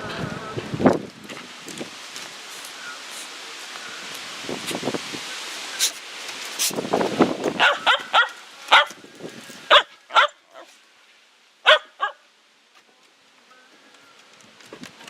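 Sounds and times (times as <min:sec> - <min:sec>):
puppy barking: 0:07.6 - 0:08.9, 0:09.7 - 0:10.7, 0:11.6 - 0:12.2.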